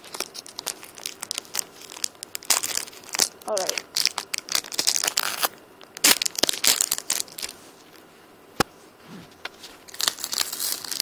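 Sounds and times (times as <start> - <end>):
wrapper tearing and crinkling: 0.0 - 7.5, 9.9 - 11.0.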